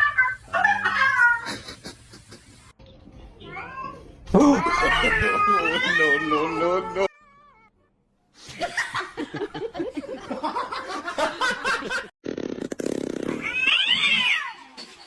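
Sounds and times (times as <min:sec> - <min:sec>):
cat-like animal cries: 0:00.0 - 0:01.5, 0:03.3 - 0:07.8, 0:13.4 - 0:14.8
laughter-like voice bursts: 0:00.6 - 0:02.7, 0:04.4 - 0:05.6.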